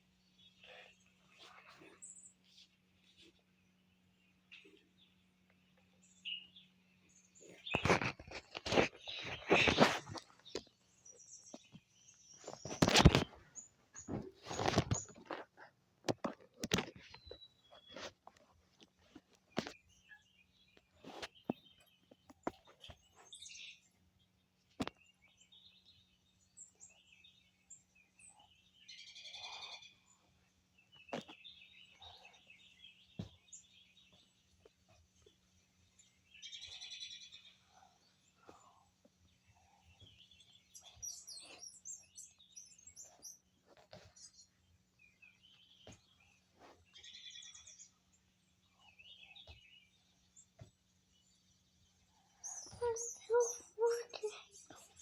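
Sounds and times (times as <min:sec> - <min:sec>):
birds chirping: 0:00.0 - 0:55.0.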